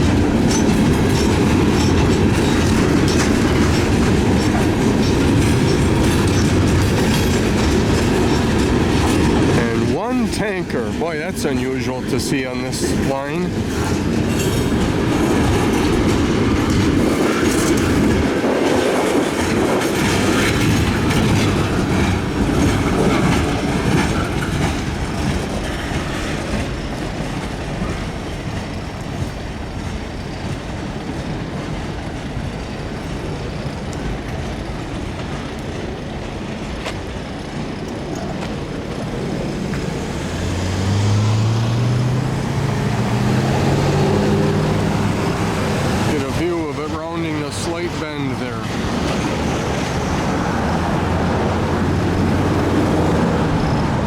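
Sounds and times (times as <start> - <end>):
freight train rumbling past: 0.0 - 54.0
train wheels clicking over rail joints: 0.0 - 54.0
vehicle engine speeding up: 39.6 - 46.3, 49.4 - 54.0.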